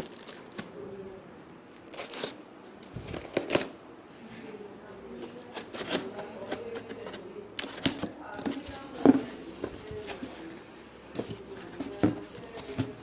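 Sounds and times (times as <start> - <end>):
cardboard box rustling and scraping: 7.8 - 10.6, 11.2 - 13.0.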